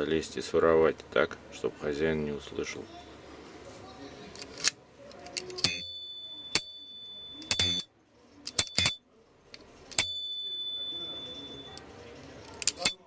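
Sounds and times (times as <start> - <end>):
alarm bell ringing: 5.6 - 7.9, 8.6 - 9.0, 9.9 - 11.8, 12.7 - 13.0
metallic lock clicks and rattle: 8.5 - 9.0, 12.5 - 13.0.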